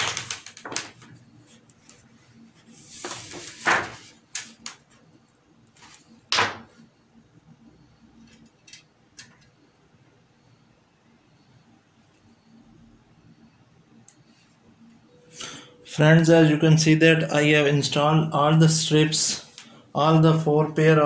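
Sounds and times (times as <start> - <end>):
clicks and knocks of handling plastic: 0.0 - 1.8.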